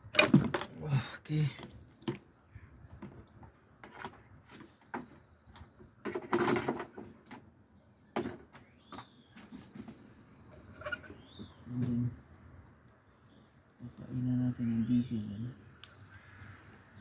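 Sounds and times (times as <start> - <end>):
hard parts knocking and clunking: 0.0 - 0.8, 3.0 - 7.5
bird chirping: 7.7 - 17.0.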